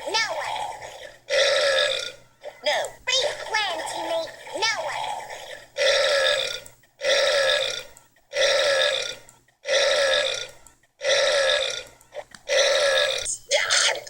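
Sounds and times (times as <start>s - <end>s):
loud burps: 0.6s - 2.2s, 5.3s - 11.9s, 12.5s - 13.3s.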